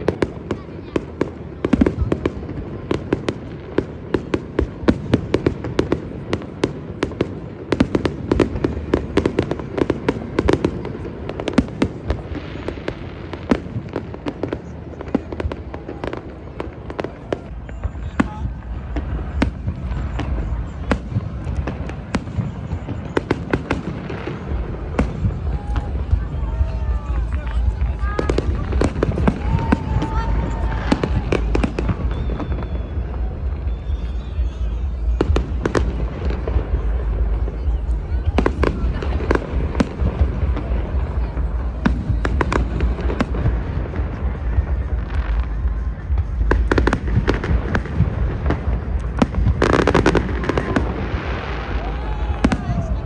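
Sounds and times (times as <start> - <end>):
fireworks bangs: 0.0 - 53.0
low rumble: 17.4 - 53.0.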